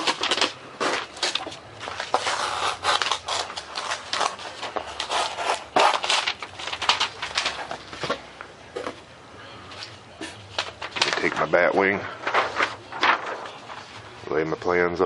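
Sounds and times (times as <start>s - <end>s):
foam board and paper scraping: 0.0s - 7.8s.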